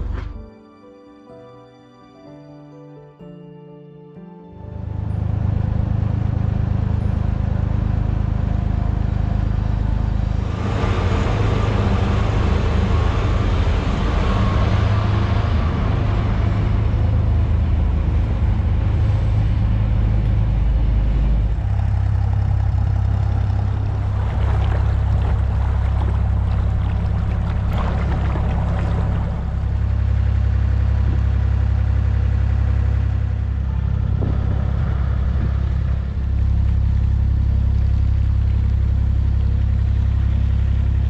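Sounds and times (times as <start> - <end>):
boat engine humming: 0.0 - 0.7, 4.5 - 41.0
rushing noise: 21.5 - 31.5.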